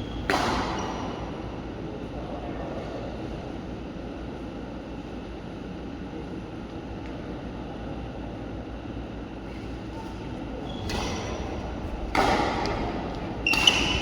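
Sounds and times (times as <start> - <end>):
low background hum: 0.0 - 14.0
racket hitting shuttlecock: 0.2 - 1.1, 10.9 - 14.0.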